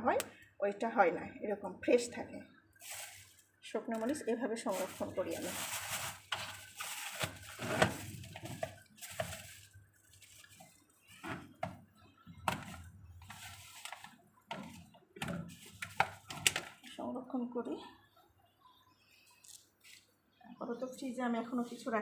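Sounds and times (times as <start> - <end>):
containers and packets handled: 2.8 - 17.0.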